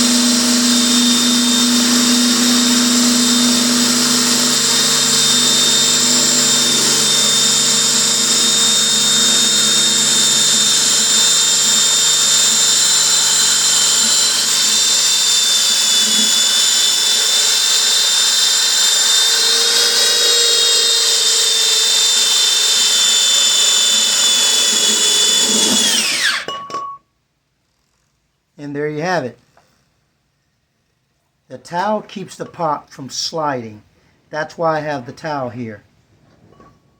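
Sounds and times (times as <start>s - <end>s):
electric drill grinding ceramic: 0.0s - 26.5s.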